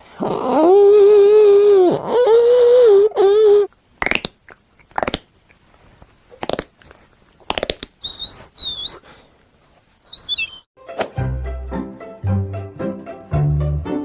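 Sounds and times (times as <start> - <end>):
mouth clicks and pops: 3.7 - 5.7, 6.3 - 9.0
whistled bird-like chirps: 8.0 - 9.0, 10.1 - 10.7.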